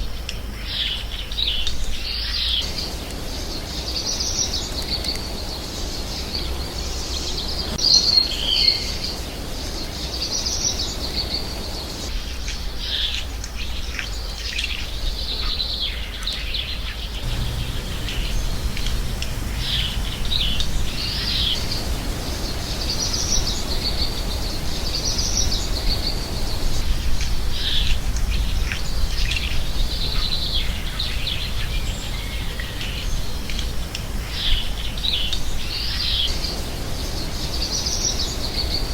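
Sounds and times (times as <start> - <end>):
finch twittering song: 17.2 - 26.2
low background rumble: 17.2 - 26.5.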